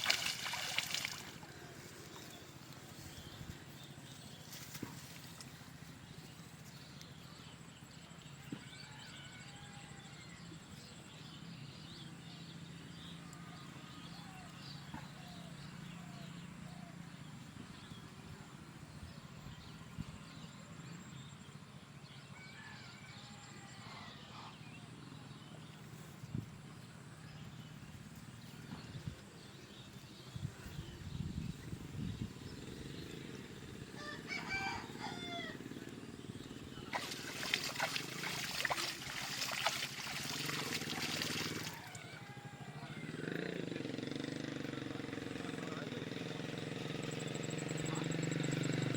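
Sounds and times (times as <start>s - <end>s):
rooster crowing: 8.8s - 10.4s, 34.0s - 35.6s, 41.6s - 43.1s.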